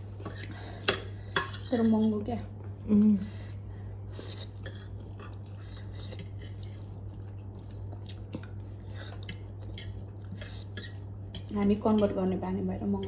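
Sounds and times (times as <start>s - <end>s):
chewing and slurping noodles: 3.4s - 11.5s.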